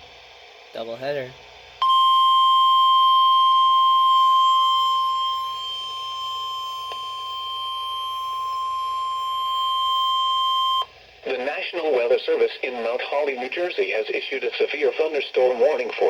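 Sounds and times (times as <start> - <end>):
steady high alarm tone: 1.8 - 10.9.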